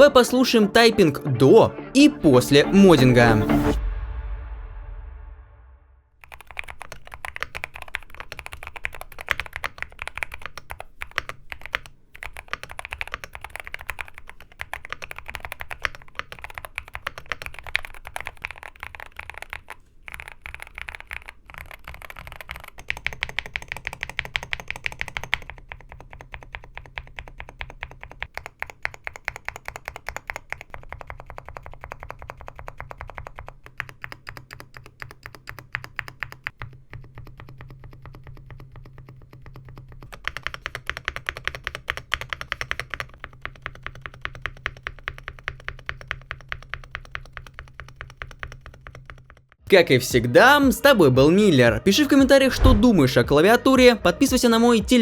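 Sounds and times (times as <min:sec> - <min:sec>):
fast mechanical keyboard typing: 0:06.2 - 0:49.5.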